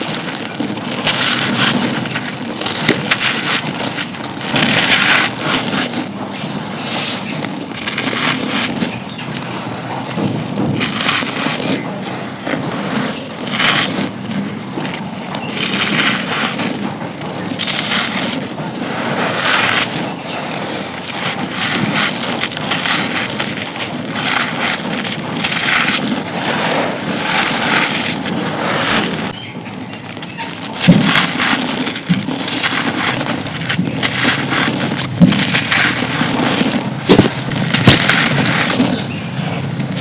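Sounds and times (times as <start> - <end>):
concrete being crushed: 0.0 - 40.0.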